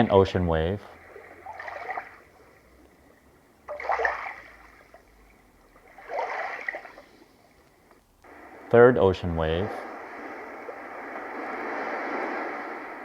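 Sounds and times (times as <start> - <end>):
ocean waves from speaker: 0.0 - 13.0
faint hiss: 6.6 - 13.0.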